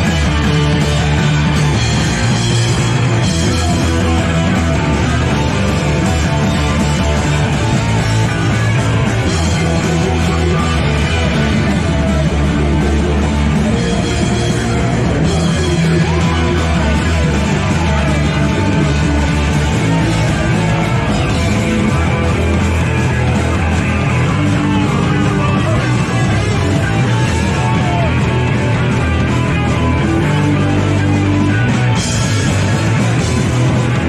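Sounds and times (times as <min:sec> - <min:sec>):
electric guitar: 0:00.0 - 0:34.0
live punk rock band: 0:00.0 - 0:34.0.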